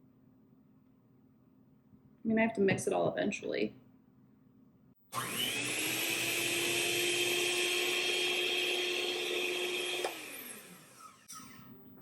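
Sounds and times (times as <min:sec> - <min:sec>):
electric mixer running: 0:05.1 - 0:11.8.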